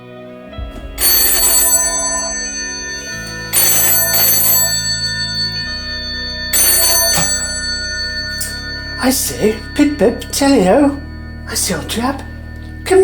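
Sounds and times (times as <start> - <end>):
telephone bell double rings: 1.0 - 11.4.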